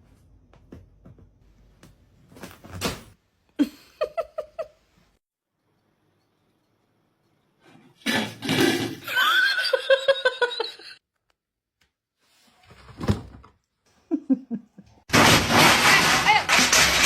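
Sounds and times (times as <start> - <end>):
person laughing: 3.6 - 4.8, 9.1 - 11.0, 14.1 - 15.0.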